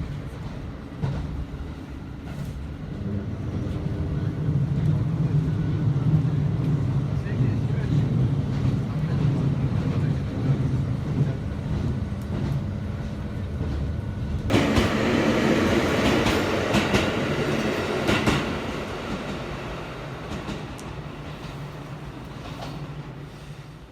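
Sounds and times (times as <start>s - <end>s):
train rumbling on rails: 0.0s - 23.9s.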